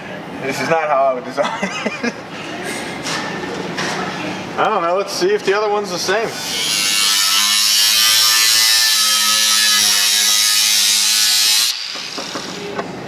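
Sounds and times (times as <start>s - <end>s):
power tool cutting metal: 6.0s - 12.8s.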